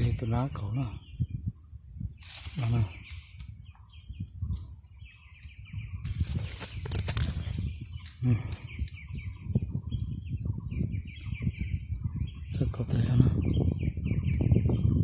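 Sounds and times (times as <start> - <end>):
high insect drone: 0.0 - 15.0
rustling through vegetation: 1.9 - 9.8
bird chirps: 2.6 - 15.0.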